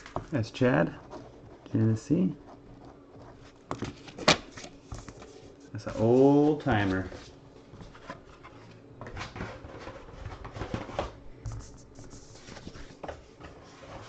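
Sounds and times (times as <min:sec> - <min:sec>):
paper and card rustling: 0:03.0 - 0:14.0.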